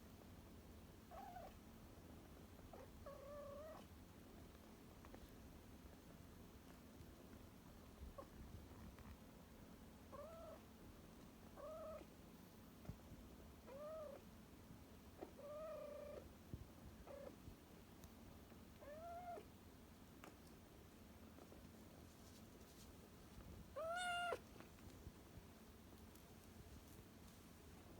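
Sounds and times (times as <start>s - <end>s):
kitten meowing: 23.8s - 24.4s.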